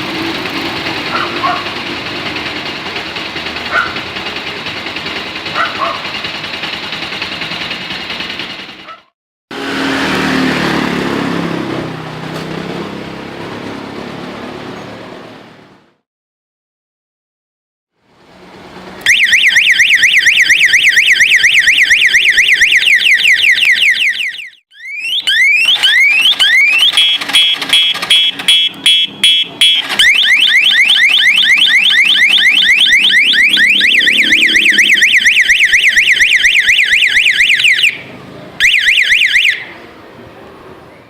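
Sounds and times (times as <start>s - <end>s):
motorcycle alarm siren: 0.0s - 11.6s, 19.0s - 39.9s.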